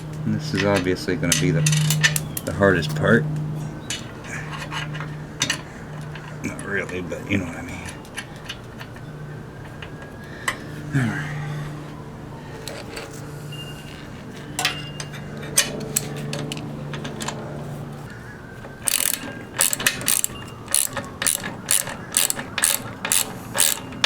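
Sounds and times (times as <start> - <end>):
ratchet wrench clicking: 18.9 - 24.0.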